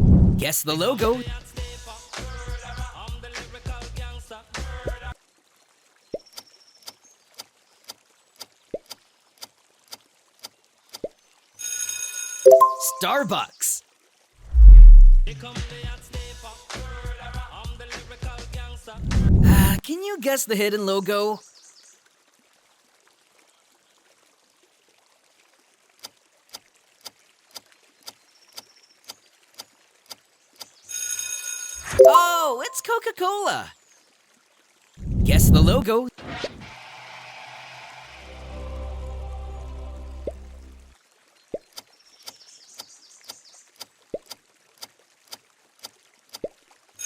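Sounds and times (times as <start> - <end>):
water-drop-like plink: 12.5 - 13.1, 31.9 - 32.8
timer ticking: 12.5 - 13.3
low musical tone: 38.3 - 40.9.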